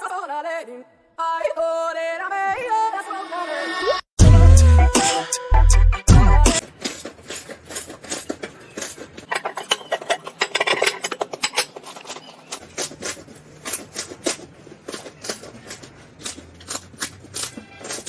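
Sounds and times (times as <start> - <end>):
knife cutting dry soap: 6.6 - 18.0.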